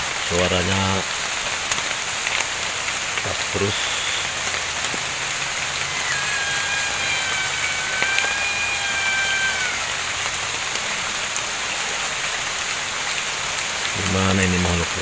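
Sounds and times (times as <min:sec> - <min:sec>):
heavy rain: 0:00.0 - 0:15.0
animal long high call: 0:03.6 - 0:11.4.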